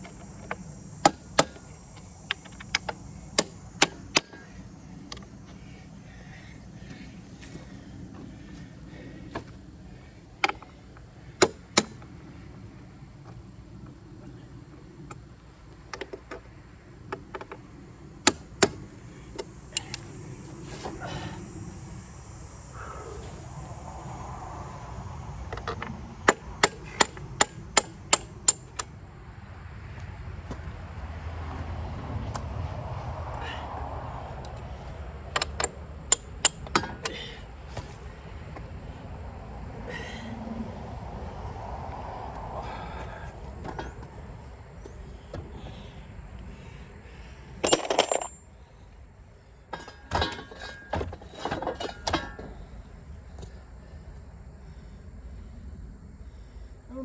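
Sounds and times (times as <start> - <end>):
steady low rumble: 0.0 - 50.6, 52.4 - 57.0
tools knocking and clinking on metal: 47.6 - 48.4, 49.7 - 52.5.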